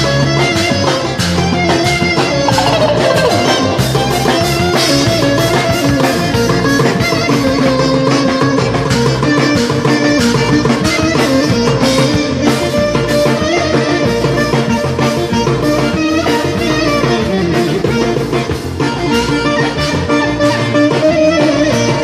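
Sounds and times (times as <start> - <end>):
bouzouki: 0.3 - 6.9
percussion beat: 2.5 - 4.8
clarinet: 2.5 - 4.9.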